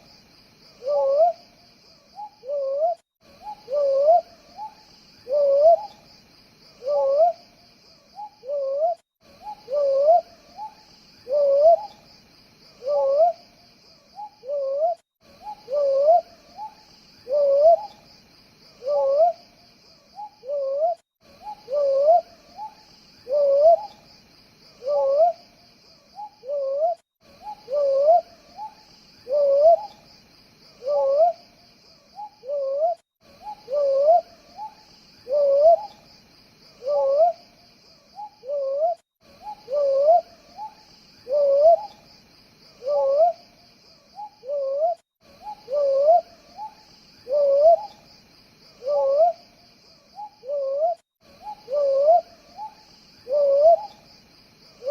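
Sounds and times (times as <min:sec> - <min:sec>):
crickets trilling: 0:00.0 - 0:54.9
owl hooting: 0:00.8 - 0:01.4, 0:02.2 - 0:06.0, 0:06.8 - 0:07.4, 0:08.2 - 0:12.0, 0:12.8 - 0:13.4, 0:14.2 - 0:18.0, 0:18.8 - 0:19.4, 0:20.2 - 0:24.0, 0:24.8 - 0:25.4, 0:26.2 - 0:30.0, 0:30.8 - 0:31.4, 0:32.2 - 0:36.0, 0:36.8 - 0:37.5, 0:38.1 - 0:42.0, 0:42.8 - 0:43.4, 0:44.1 - 0:48.0, 0:48.8 - 0:49.4, 0:50.2 - 0:54.0.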